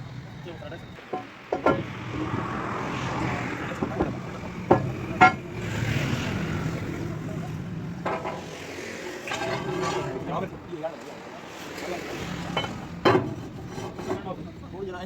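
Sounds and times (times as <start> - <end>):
low engine running: 0.0 - 10.9
sharp metallic knocks: 1.0 - 2.4, 3.8 - 5.8, 8.0 - 10.7, 12.5 - 14.8.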